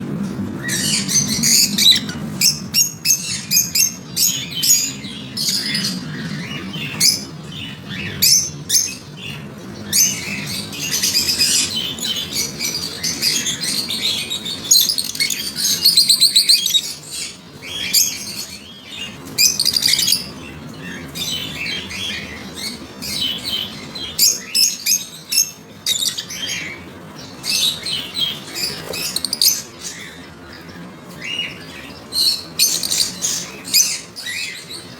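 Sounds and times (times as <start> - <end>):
lovebirds chirping and squawking: 0.2 - 34.9
loud fast bird trill: 9.9 - 30.2.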